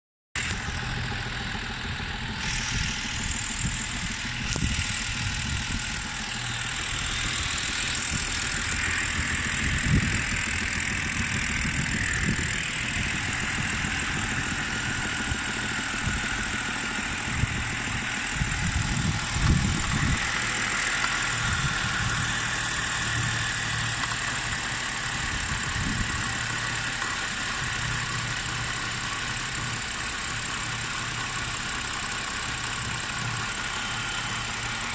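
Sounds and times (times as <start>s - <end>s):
car engine idling: 0.4s - 34.9s
dull engine knock thuds: 2.7s - 27.2s.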